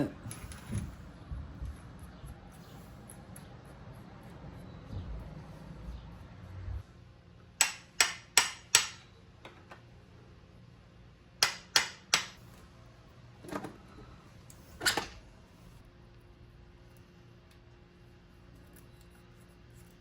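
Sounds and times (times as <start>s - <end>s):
hammer tapping on metal: 7.6s - 9.1s, 11.4s - 12.4s.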